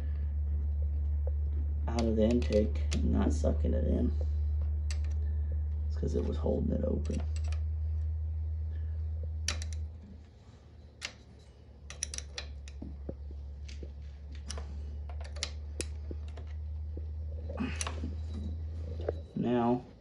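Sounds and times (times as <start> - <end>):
steady low hum: 0.0 - 20.0
metallic clicks of hand tools: 1.9 - 3.2, 4.9 - 5.2, 7.0 - 7.6, 9.4 - 9.9, 11.0 - 13.8, 14.4 - 16.6, 17.7 - 18.3.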